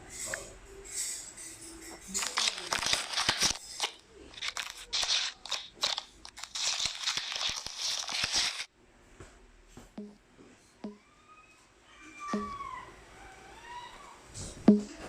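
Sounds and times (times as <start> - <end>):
crunching and crackling: 2.0 - 8.7.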